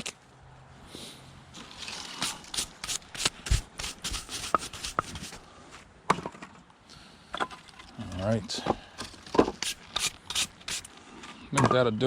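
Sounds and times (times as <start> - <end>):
firewood knocking and scraping: 8.4 - 10.4.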